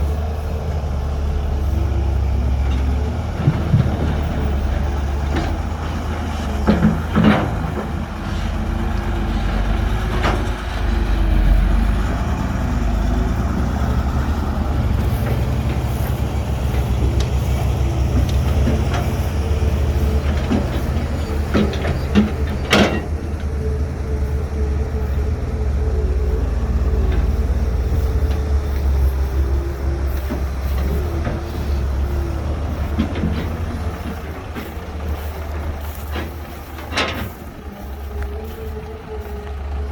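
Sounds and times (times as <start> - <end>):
diesel machinery rumbling: 0.0 - 39.9
metallic clanks: 15.0 - 23.6.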